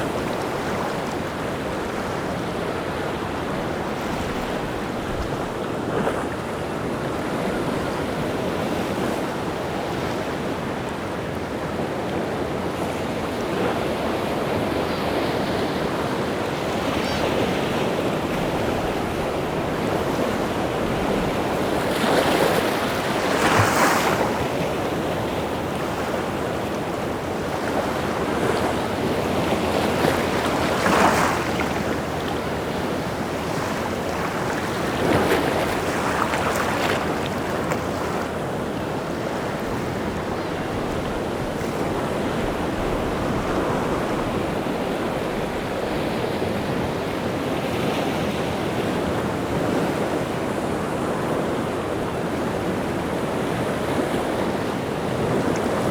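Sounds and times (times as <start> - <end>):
sea waves crashing on shore: 0.0 - 55.9.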